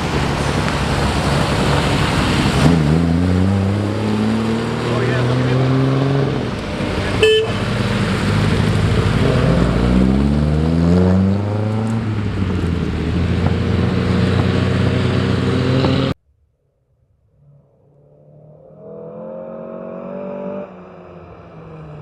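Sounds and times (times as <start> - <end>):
car engine revving: 0.0 - 16.2.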